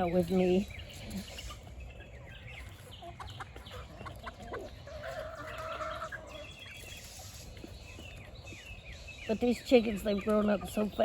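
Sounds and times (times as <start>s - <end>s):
chicks clucking softly: 0.9s - 8.8s.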